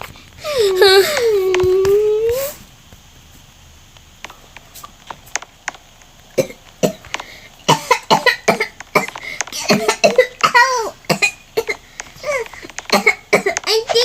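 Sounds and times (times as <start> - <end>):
child pretend sobbing: 0.4 - 2.6
child coughing: 7.7 - 14.0.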